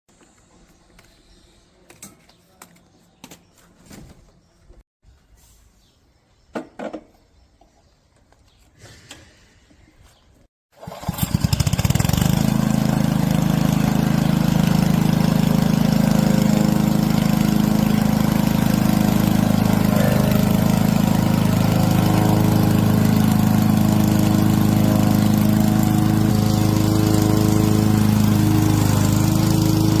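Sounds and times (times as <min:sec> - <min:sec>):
lawn mower engine starting and running: 0:10.7 - 0:30.0.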